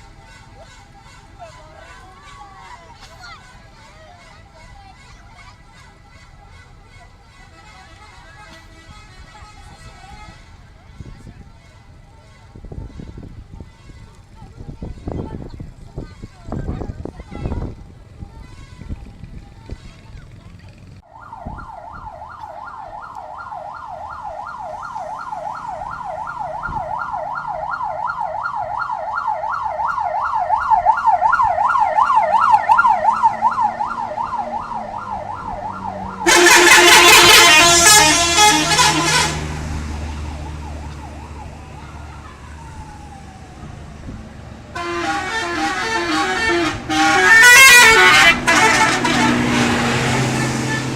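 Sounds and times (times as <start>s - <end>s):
bus engine rumbling: 0.0s - 50.9s
multi-tone musical horn blast: 7.5s - 10.6s, 32.6s - 40.6s, 44.7s - 50.9s
siren-style horn warbling: 21.1s - 43.8s, 44.7s - 50.9s.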